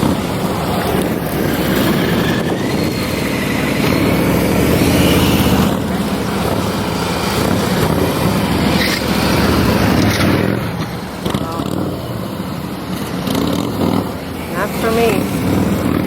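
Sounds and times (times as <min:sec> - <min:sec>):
motorcycle engine running: 0:00.0 - 0:16.0.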